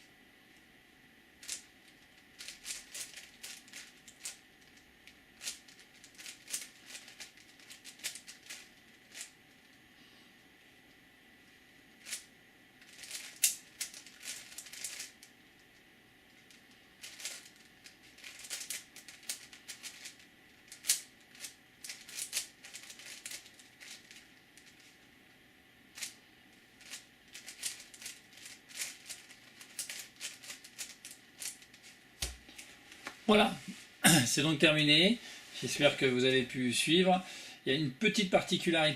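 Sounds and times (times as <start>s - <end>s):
puzzle cube clicking turns: 2.4s - 4.4s, 5.4s - 9.3s, 12.9s - 15.1s, 17.0s - 24.8s, 26.8s - 32.4s.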